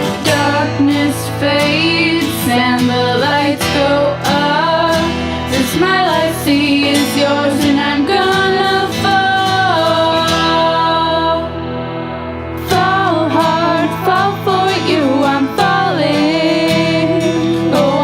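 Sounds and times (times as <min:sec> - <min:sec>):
person singing: 0:00.0 - 0:11.6, 0:12.6 - 0:18.0
guitar: 0:00.0 - 0:18.0.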